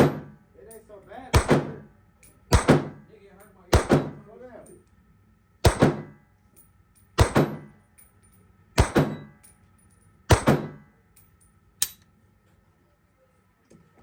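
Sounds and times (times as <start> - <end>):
gunshots with reverberation: 0.0 - 0.4, 1.3 - 1.9, 2.5 - 3.0, 3.7 - 4.3, 5.6 - 6.2, 7.2 - 7.8, 8.8 - 9.3, 10.3 - 10.8
sharp gunshot crack: 1.4 - 1.8, 2.5 - 3.0, 3.7 - 4.2, 5.6 - 6.2, 7.2 - 7.7, 8.8 - 9.2, 10.3 - 10.8.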